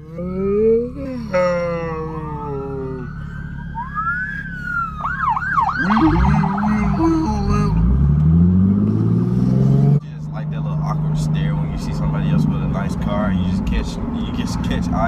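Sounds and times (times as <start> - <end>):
emergency siren wailing and yelping: 0.0 - 8.0
car engine revving: 0.0 - 15.0.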